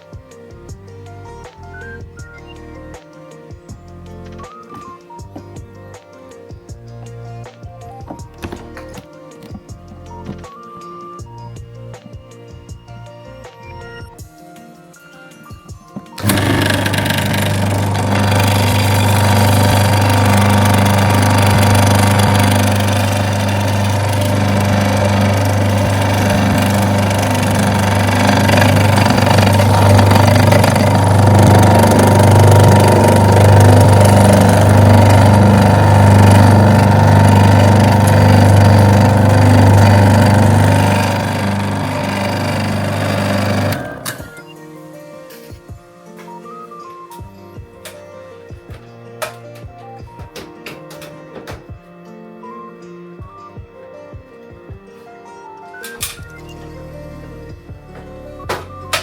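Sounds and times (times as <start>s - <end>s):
pressure washer pump humming: 16.1s - 44.4s.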